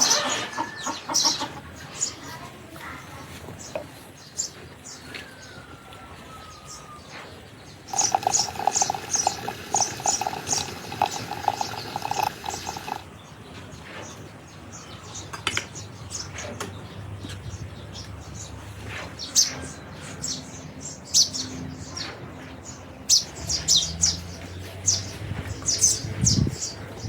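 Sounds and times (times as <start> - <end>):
small birds chirping: 0.8 - 18.6.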